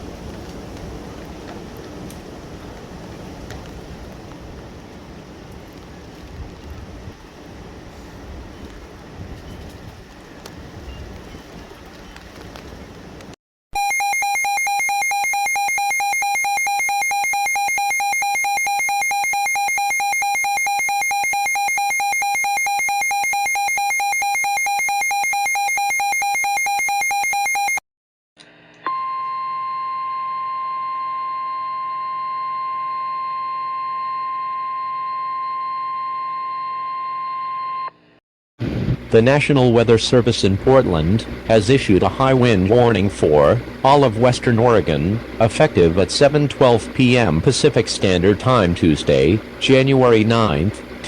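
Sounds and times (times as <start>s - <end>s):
harsh two-tone alarm: 13.8s - 27.8s, 28.9s - 38.0s.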